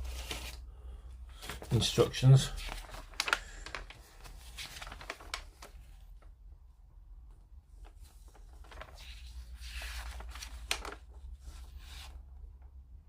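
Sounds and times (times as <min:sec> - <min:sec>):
paper rustling: 0:00.0 - 0:00.6, 0:01.3 - 0:06.3, 0:07.8 - 0:12.3.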